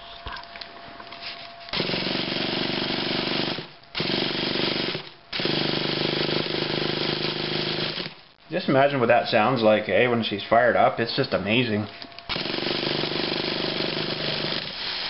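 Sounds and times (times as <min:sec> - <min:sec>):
electric starter whirring: 0:01.6 - 0:08.4, 0:12.0 - 0:15.0.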